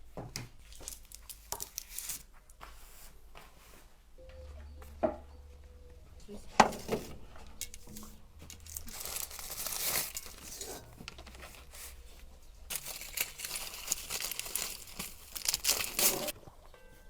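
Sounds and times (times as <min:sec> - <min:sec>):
crisp food crunching: 0:07.5 - 0:16.3.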